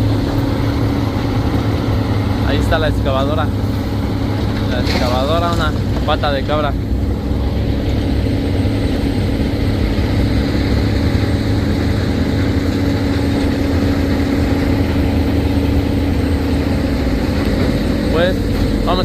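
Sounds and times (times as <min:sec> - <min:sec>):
diesel engine idling: 0:00.0 - 0:19.0.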